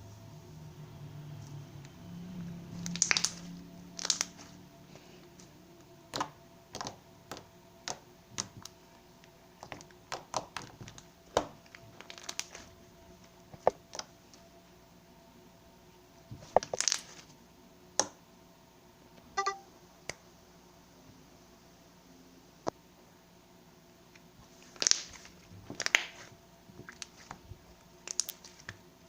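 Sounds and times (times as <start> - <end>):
slime squeezed by hand: 2.8 - 4.6.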